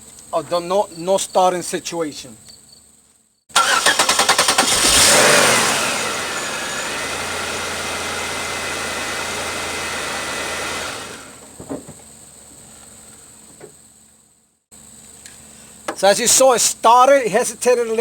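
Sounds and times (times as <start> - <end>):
car engine cranking and idling: 3.5 - 11.6.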